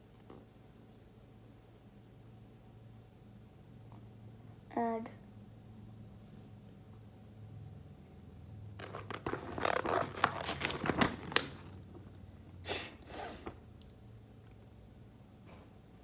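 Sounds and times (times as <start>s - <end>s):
packaging crinkling and rustling: 8.8s - 12.2s.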